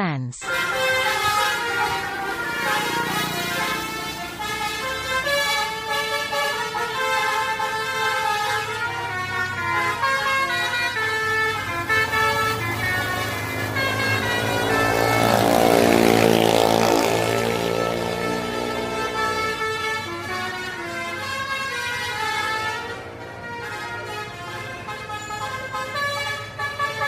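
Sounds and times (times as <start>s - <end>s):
bus engine running: 0.4s - 27.0s
musical bus horn melody: 0.4s - 27.0s.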